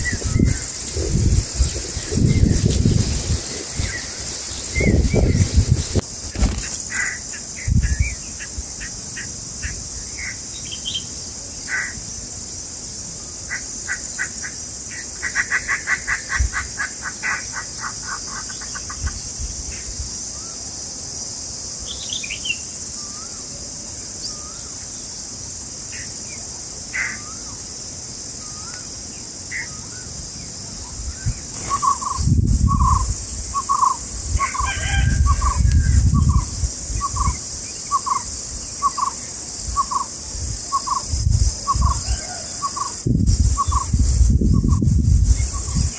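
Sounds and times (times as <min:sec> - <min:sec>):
small birds chirping: 0:00.0 - 0:08.4, 0:29.6 - 0:45.9
high insect drone: 0:00.0 - 0:45.9.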